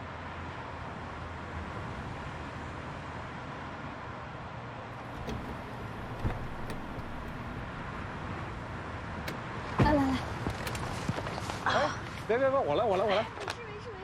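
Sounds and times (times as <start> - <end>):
car engine rumbling: 4.9 - 11.5.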